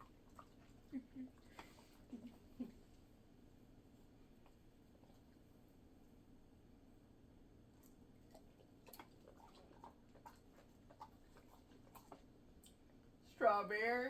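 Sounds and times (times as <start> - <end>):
dog chewing: 0.0 - 1.9, 7.7 - 13.0.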